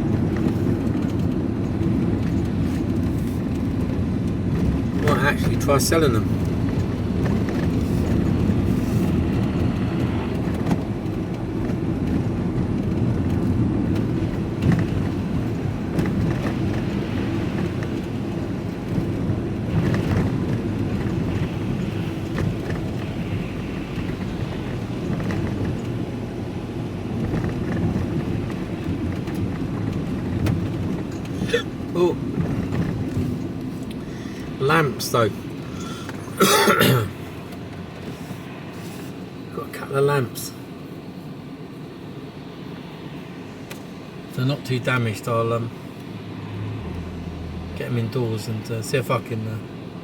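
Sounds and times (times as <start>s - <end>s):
vehicle engine rumbling: 0.0s - 50.0s.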